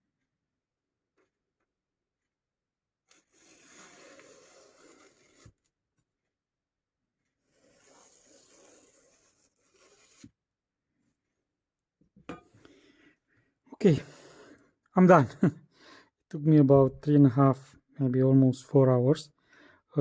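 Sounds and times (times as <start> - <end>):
rubbing or scraping strokes: 3.1 - 5.7, 7.4 - 10.4.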